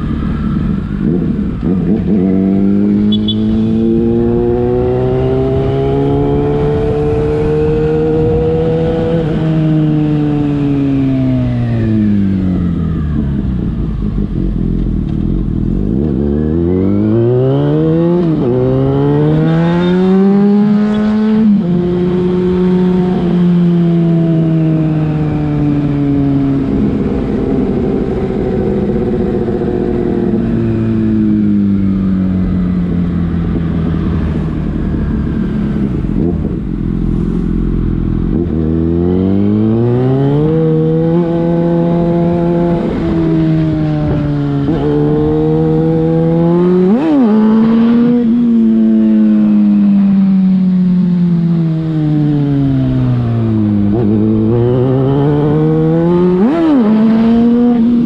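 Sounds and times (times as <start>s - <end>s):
motorcycle engine accelerating: 0.0s - 58.0s.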